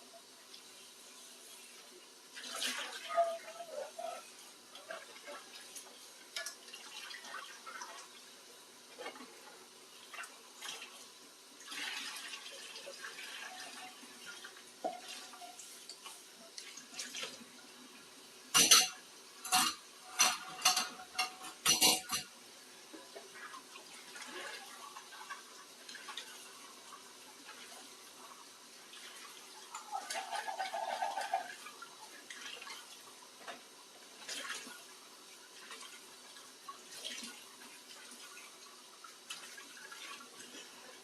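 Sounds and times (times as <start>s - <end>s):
faint water: 0.0s - 41.0s
dishes clattering in a sink: 14.8s - 16.1s, 18.5s - 22.3s, 29.7s - 31.8s.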